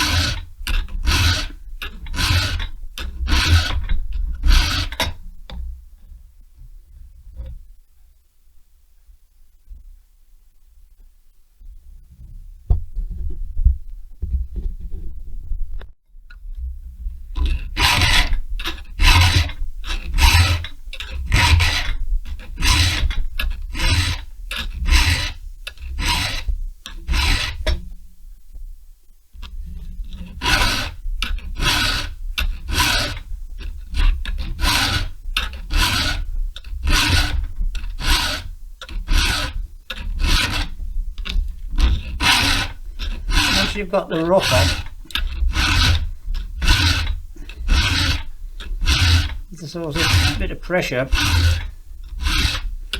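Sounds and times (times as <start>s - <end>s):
hand file rasping on chain: 0.0s - 5.2s, 17.4s - 27.8s, 30.0s - 52.9s.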